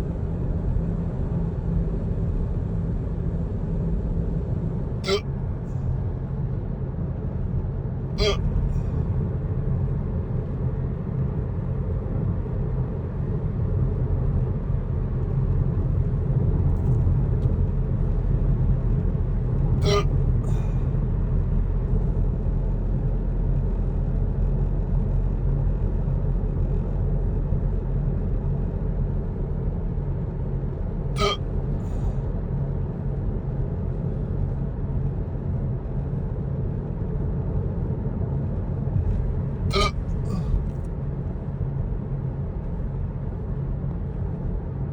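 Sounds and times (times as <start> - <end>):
man hiccupping: 5.0 - 5.2, 8.2 - 8.8, 19.8 - 20.8, 31.2 - 31.4, 39.7 - 40.6.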